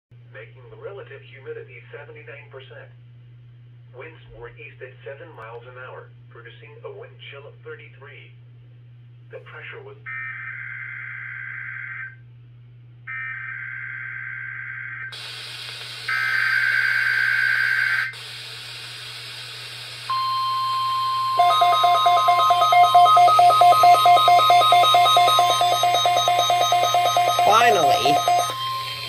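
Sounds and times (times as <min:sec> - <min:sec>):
steady warning alarm tone: 0:16.1 - 0:18.2, 0:20.1 - 0:29.0
rapid loud beeping alerts: 0:20.1 - 0:29.0
buzzy digital data bursts: 0:21.4 - 0:28.6.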